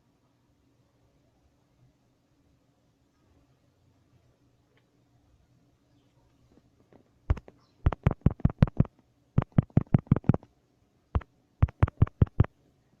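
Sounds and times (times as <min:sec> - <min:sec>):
sharp knocks: 0:11.6 - 0:12.5.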